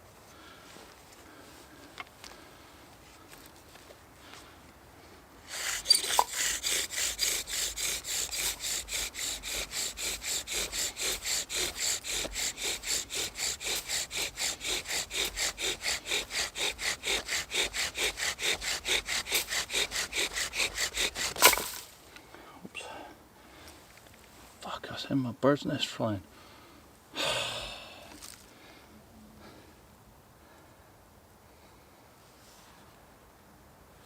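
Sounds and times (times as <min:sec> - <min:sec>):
wooden spindle rasping: 0:05.4 - 0:21.8.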